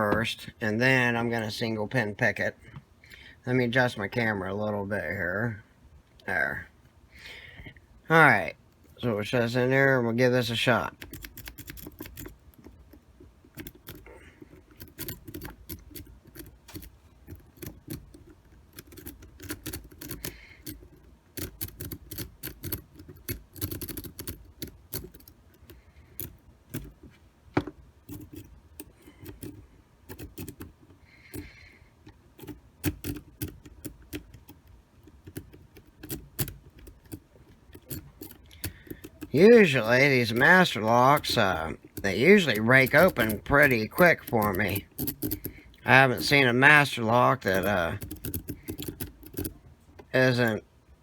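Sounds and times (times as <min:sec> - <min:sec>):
lock pick clicking and scraping: 0:10.9 - 0:50.1.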